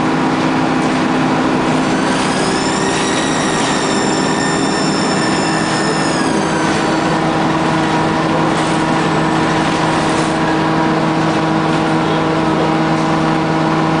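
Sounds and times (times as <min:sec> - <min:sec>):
bus engine hum: 0:00.0 - 0:14.0
high-pitched whine: 0:01.3 - 0:11.0.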